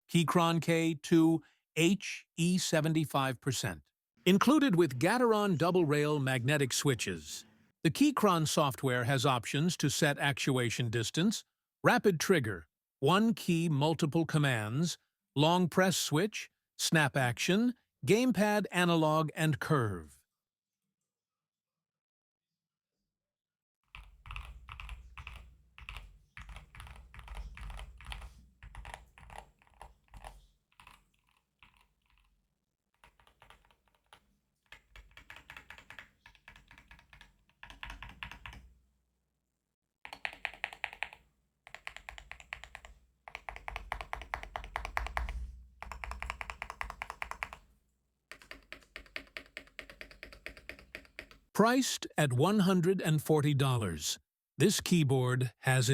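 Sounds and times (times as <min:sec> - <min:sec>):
keyboard typing: 0:23.9 - 0:32.4, 0:33.0 - 0:38.7, 0:40.1 - 0:47.7, 0:48.3 - 0:51.5.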